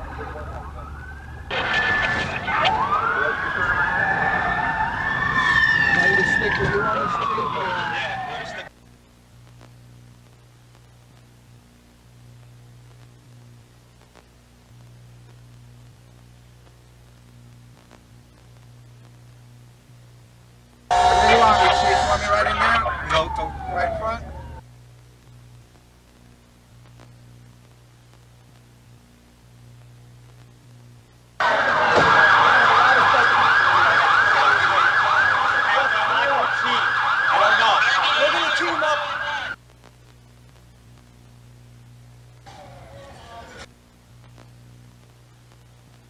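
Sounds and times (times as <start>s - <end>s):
emergency sirens yelping: 0.0s - 8.7s, 20.9s - 24.6s, 31.4s - 39.6s, 42.4s - 43.7s
faint low hum: 5.8s - 46.0s.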